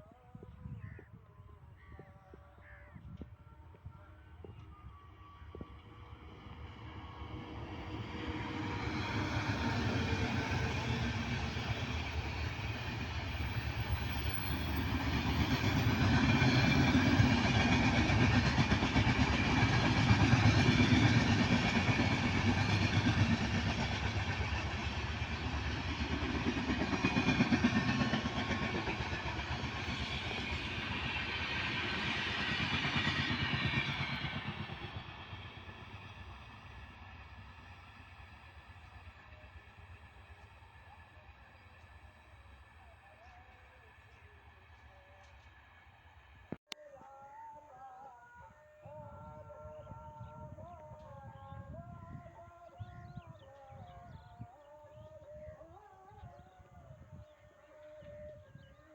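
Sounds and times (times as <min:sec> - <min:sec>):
train wheels rumbling on rails: 0:05.6 - 0:42.8.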